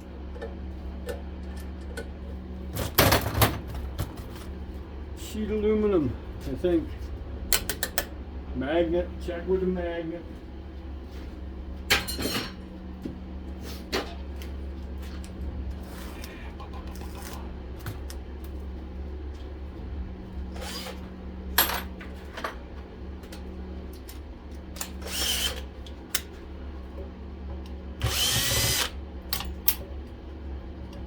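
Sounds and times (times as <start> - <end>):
low hum: 14.4 - 31.0
cordless drill spinning: 25.0 - 25.6, 28.0 - 29.0.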